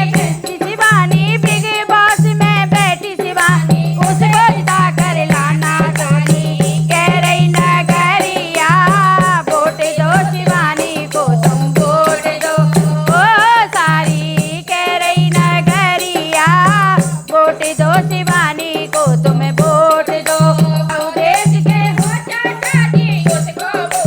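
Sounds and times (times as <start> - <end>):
rattling jingling percussion: 0.0 - 24.0
steady percussion beat: 0.0 - 24.0.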